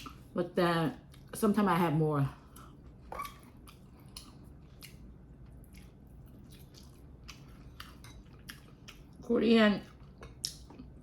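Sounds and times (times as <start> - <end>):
low room hum: 0.0 - 11.0
chewing food: 2.4 - 11.0.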